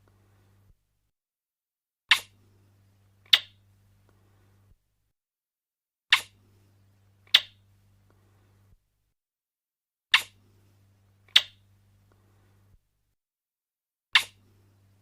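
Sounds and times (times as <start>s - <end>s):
lip smacks: 6.1s - 6.4s, 10.1s - 10.4s, 14.2s - 14.4s.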